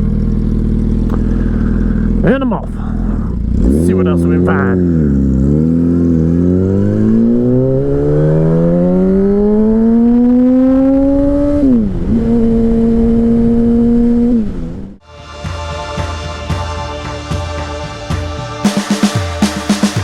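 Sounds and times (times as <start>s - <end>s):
motorcycle engine accelerating: 0.0s - 20.0s
background music: 15.0s - 20.0s.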